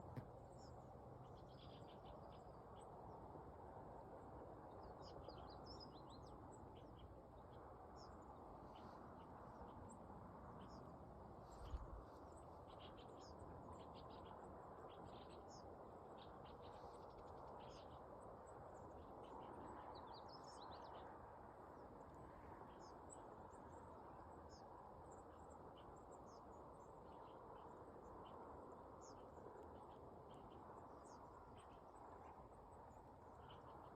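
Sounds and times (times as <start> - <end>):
low background hiss: 0.0 - 33.9
small birds chirping: 29.0 - 33.9.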